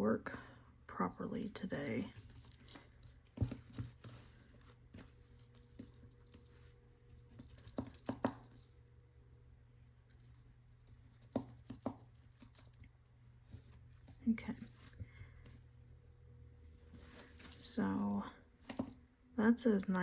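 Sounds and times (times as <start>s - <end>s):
fingers rustling necklace chain: 1.3s - 13.1s, 14.5s - 15.0s, 16.9s - 19.0s.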